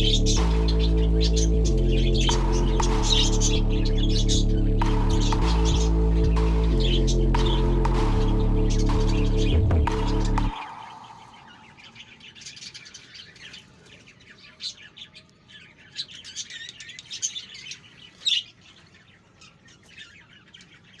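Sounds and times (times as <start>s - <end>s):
background music: 0.0s - 12.5s
budgerigars chirping: 0.0s - 15.2s.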